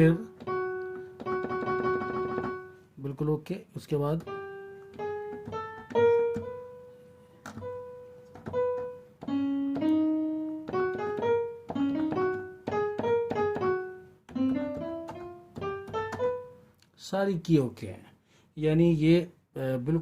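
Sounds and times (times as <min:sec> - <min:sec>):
piano single notes: 0:00.0 - 0:02.8, 0:04.2 - 0:16.7.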